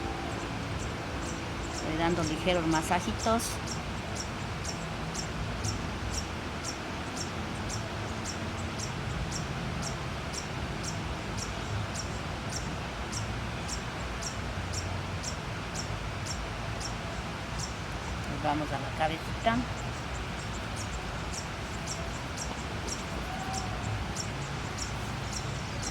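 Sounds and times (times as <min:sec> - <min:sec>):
cricket chirping: 0:19.4 - 0:25.9.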